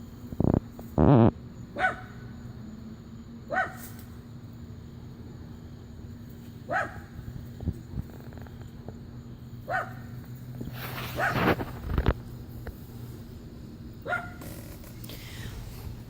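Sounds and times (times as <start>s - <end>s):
dog barking: 1.8s - 2.2s, 3.5s - 3.8s, 6.7s - 7.0s, 9.7s - 10.1s, 14.0s - 14.4s.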